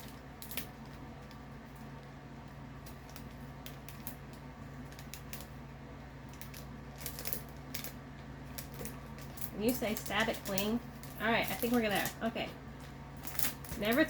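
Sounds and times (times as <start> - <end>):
plastic envelope crinkling: 0.0 - 5.6, 6.2 - 14.0.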